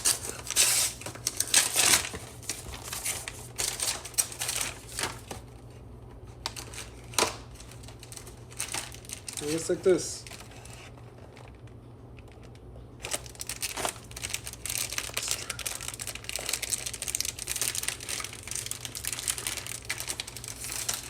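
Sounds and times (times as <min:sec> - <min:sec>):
snack wrapper crinkling: 0:06.5 - 0:21.0.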